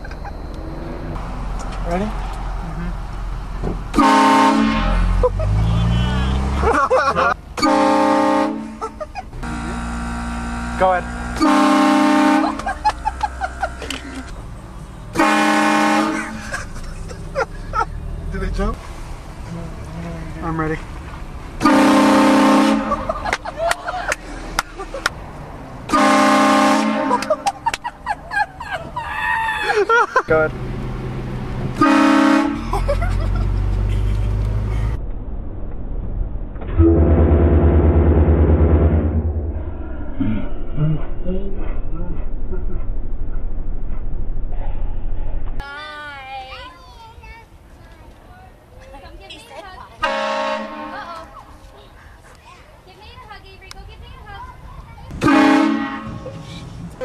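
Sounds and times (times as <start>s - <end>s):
train horn blasts: 3.9s - 5.2s, 7.6s - 8.8s, 9.4s - 12.7s, 15.1s - 16.4s, 21.6s - 23.2s, 25.9s - 27.4s, 31.8s - 32.6s, 36.7s - 39.3s, 50.0s - 51.1s, 55.2s - 56.3s.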